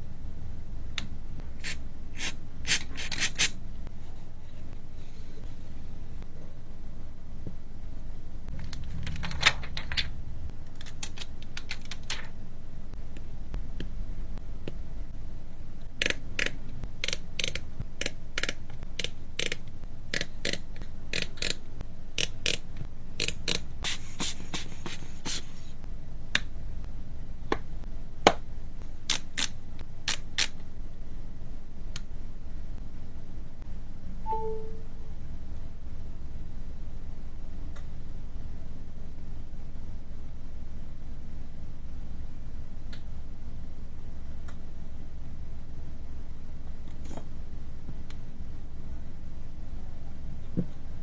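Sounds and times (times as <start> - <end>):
steady low hum: 0.0 - 51.0
faint tone: 34.1 - 35.2.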